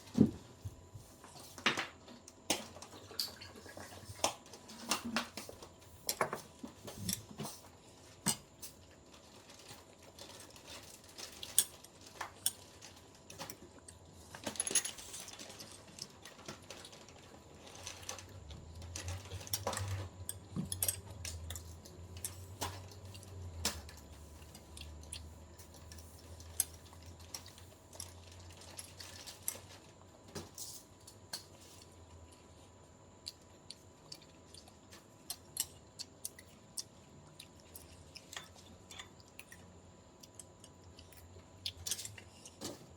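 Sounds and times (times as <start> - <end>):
utensils clinking on a plate: 19.0 - 21.7.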